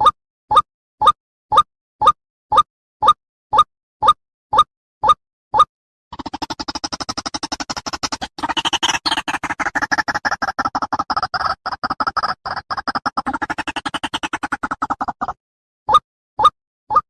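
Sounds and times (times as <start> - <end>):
stuttering electronic buzzy pulses: 6.1 - 15.4.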